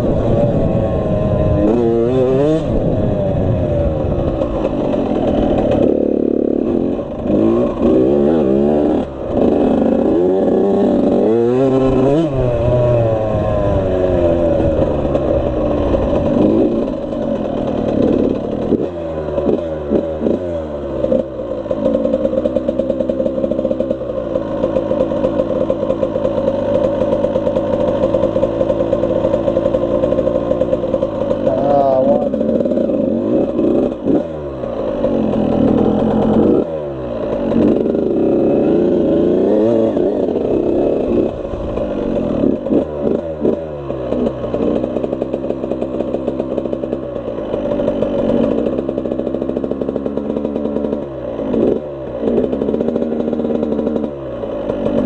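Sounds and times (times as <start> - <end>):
dirt bike engine revving: 0.0 - 55.0.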